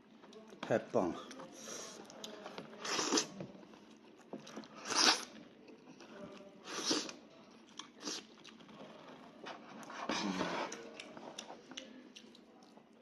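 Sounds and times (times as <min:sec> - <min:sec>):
person chewing meat: 0:06.4 - 0:09.1, 0:10.2 - 0:13.0.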